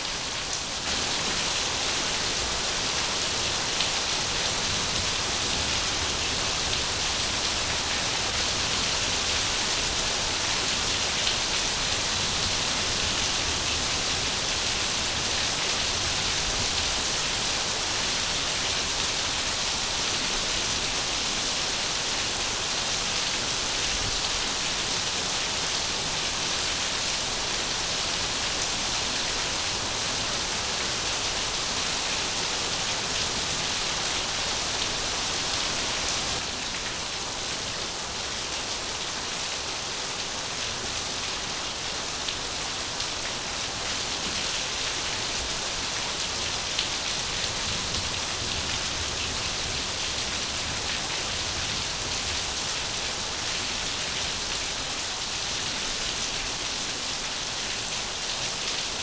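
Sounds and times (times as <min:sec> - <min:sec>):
hiss of falling water: 0:00.0 - 0:38.2.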